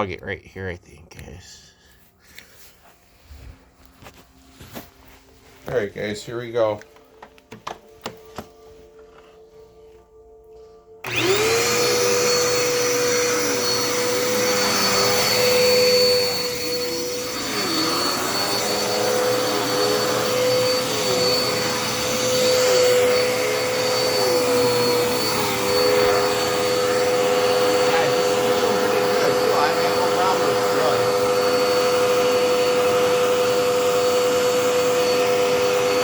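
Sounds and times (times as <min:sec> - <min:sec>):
vacuum cleaner whining: 0:02.4 - 0:36.0.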